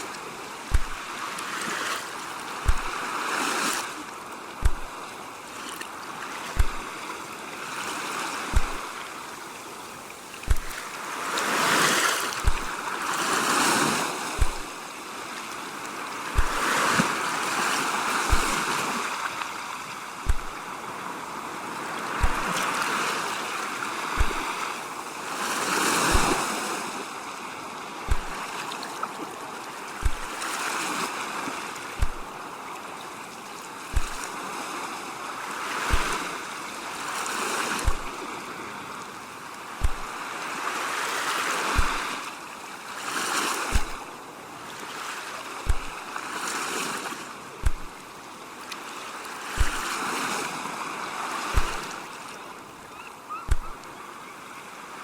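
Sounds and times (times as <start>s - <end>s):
ocean waves washing in: 0.0s - 55.0s
short deep thump: 0.7s - 1.0s, 2.6s - 2.9s, 4.6s - 4.9s, 6.6s - 6.9s, 8.5s - 8.8s, 10.4s - 10.8s, 12.4s - 12.7s, 14.4s - 14.7s, 16.4s - 16.6s, 18.3s - 18.6s, 20.3s - 20.6s, 22.2s - 22.5s, 24.2s - 24.5s, 26.1s - 26.4s, 28.1s - 28.4s, 30.0s - 30.4s, 32.0s - 32.3s, 33.9s - 34.2s, 35.9s - 36.2s, 37.8s - 38.2s, 39.8s - 40.1s, 41.8s - 42.0s, 43.7s - 44.0s, 45.7s - 46.0s, 47.6s - 48.0s, 49.6s - 49.9s, 51.6s - 51.9s, 53.5s - 53.8s.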